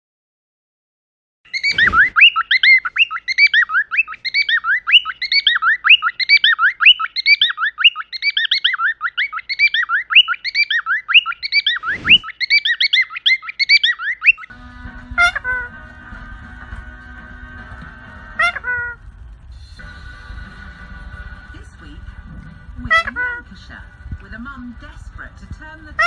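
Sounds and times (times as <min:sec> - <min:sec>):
bird chirping rapidly: 0:01.5 - 0:14.5.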